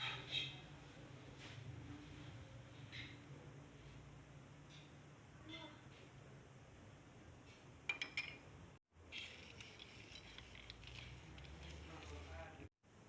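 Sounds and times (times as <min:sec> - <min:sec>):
utensils clinking on dishware: 0:09.1 - 0:12.3
soft scraping with small ticks: 0:09.2 - 0:12.6.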